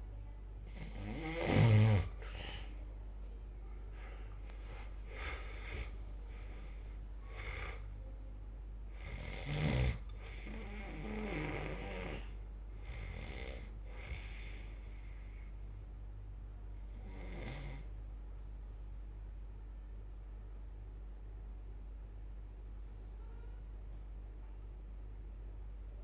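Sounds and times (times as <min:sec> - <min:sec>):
person snoring: 0:00.6 - 0:02.7, 0:08.9 - 0:14.8, 0:16.9 - 0:17.9
soft breathing: 0:02.0 - 0:09.3, 0:10.0 - 0:15.9.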